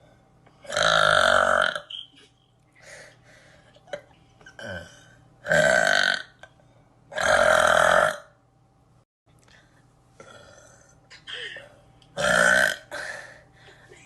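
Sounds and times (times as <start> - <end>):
woman burping: 0.6 - 1.9, 3.9 - 6.3, 11.2 - 13.0.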